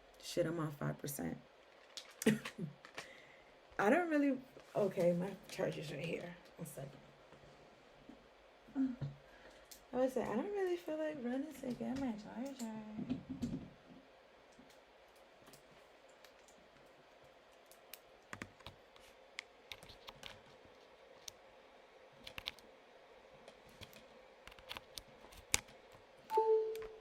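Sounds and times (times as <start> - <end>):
short steady tone: 26.3 - 27.0.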